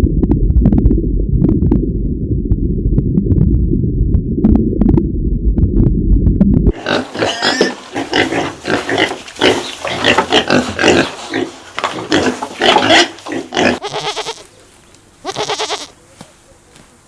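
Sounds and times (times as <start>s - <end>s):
pigs grunting: 6.7s - 14.5s.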